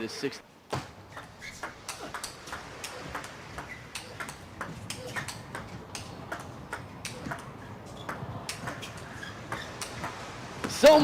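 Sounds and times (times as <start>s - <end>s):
ping pong ball clicking: 1.6s - 7.5s, 8.1s - 9.0s.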